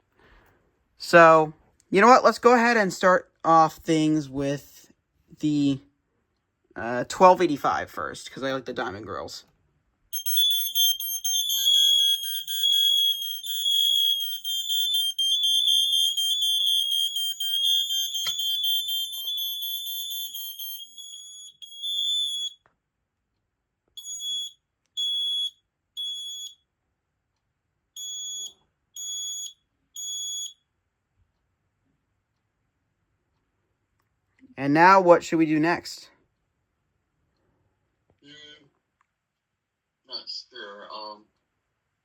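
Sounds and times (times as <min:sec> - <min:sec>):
smoke alarm three-beep pattern: 0:10.1 - 0:22.6, 0:24.0 - 0:26.7, 0:28.0 - 0:30.6
high-pitched smoke alarms beeping: 0:10.1 - 0:22.7, 0:24.0 - 0:26.7, 0:28.0 - 0:30.7.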